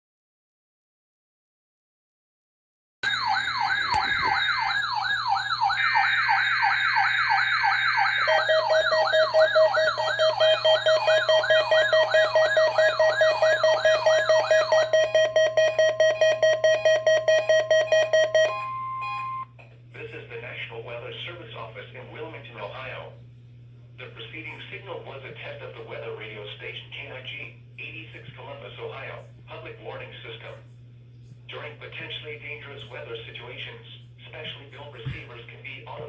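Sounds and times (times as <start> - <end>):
electronic siren wails: 3.0 - 19.5
rapid pulsing beeps: 8.0 - 19.4.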